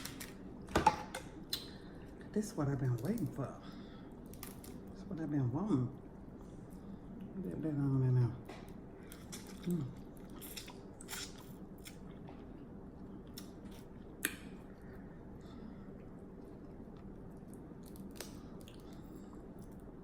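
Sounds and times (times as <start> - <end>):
crab shells cracking: 0.0 - 0.4, 4.2 - 5.0, 17.4 - 19.0
soft chewing: 5.9 - 7.5, 8.4 - 20.0.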